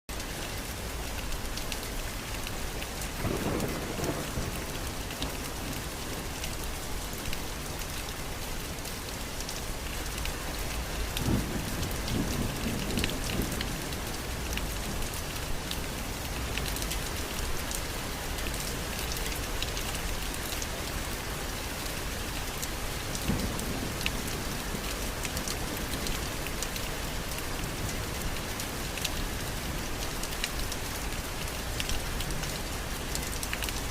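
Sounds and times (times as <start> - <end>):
steady rain falling: 0.1 - 33.9
raindrop ticks: 1.0 - 8.2, 8.8 - 20.7, 21.8 - 29.2, 29.8 - 33.9
thunder rumbles: 3.1 - 7.8, 9.6 - 18.0, 22.3 - 29.9.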